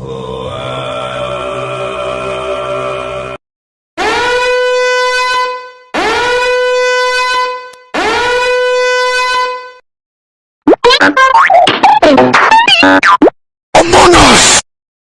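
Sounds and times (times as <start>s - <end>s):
long horn blasts: 4.0s - 9.8s.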